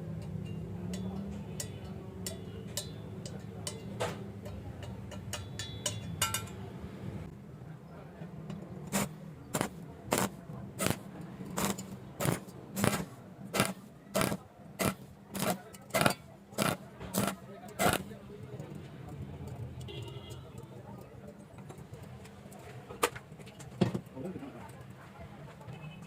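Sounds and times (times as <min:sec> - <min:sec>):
light metallic clinks and scraping: 0:00.1 - 0:06.8
sharp metal taps: 0:00.2 - 0:06.7.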